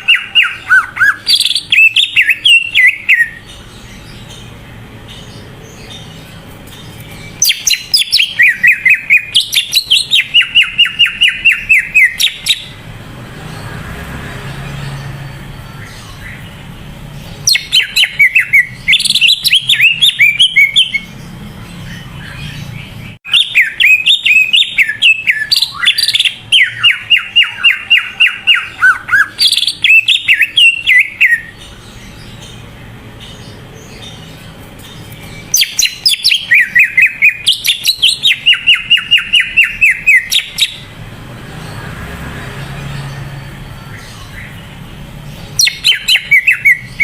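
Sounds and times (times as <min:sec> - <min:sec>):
bird singing whistled notes: 0:00.0 - 0:04.5, 0:06.9 - 0:12.8, 0:17.3 - 0:32.6, 0:33.2 - 0:40.9, 0:43.0 - 0:47.0.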